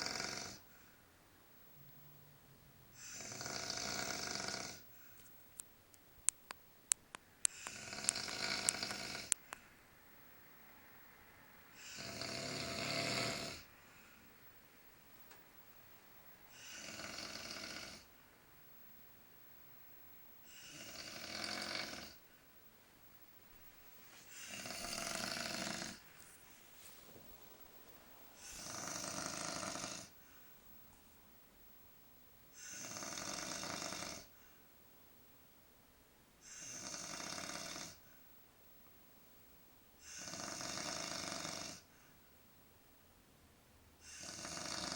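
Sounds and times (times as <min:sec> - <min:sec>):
man snoring: 0:00.0 - 0:00.7, 0:02.9 - 0:04.9, 0:07.5 - 0:09.4, 0:11.8 - 0:13.7, 0:16.5 - 0:18.1, 0:20.4 - 0:22.2, 0:24.3 - 0:26.1, 0:28.4 - 0:30.2, 0:32.5 - 0:34.3, 0:36.4 - 0:38.0, 0:40.0 - 0:41.9, 0:44.0 - 0:44.9.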